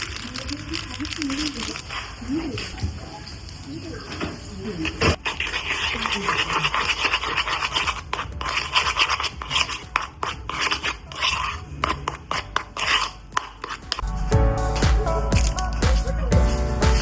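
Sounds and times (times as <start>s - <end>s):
rasping scraping strokes: 5.1s - 14.0s
music: 7.2s - 17.0s.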